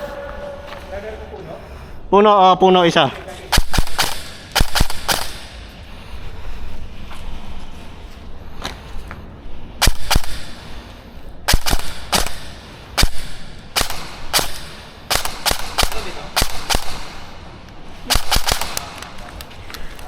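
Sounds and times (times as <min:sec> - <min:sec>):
airsoft gun shots: 0:03.5 - 0:05.7, 0:09.8 - 0:10.6, 0:11.5 - 0:17.4, 0:18.0 - 0:19.3.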